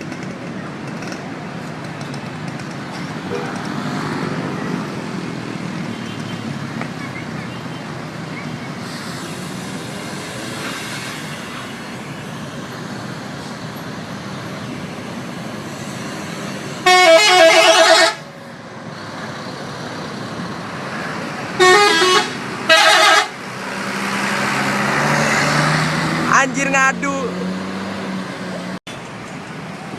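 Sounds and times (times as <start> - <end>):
road traffic: 0.0 - 29.9
bus musical horn blasts: 16.8 - 18.2, 21.6 - 23.4.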